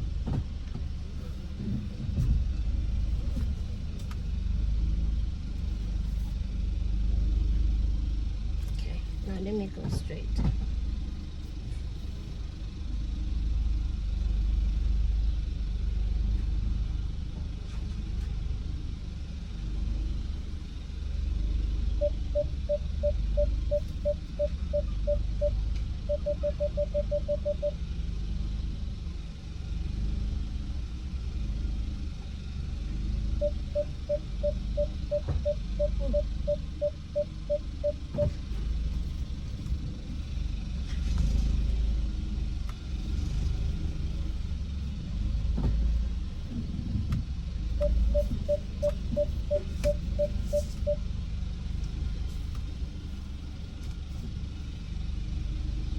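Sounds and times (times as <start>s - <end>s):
car engine running low: 0.0s - 55.9s
parking sensor beeps: 21.9s - 27.8s, 33.4s - 38.9s, 47.8s - 51.2s.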